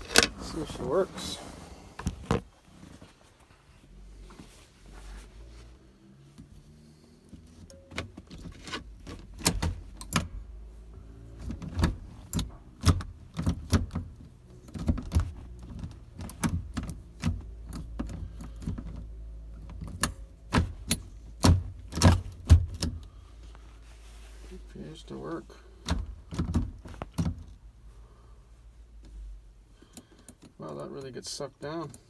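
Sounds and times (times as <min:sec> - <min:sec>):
lever clicks and clunks: 0:00.0 - 0:00.5, 0:07.6 - 0:10.4, 0:19.7 - 0:23.1.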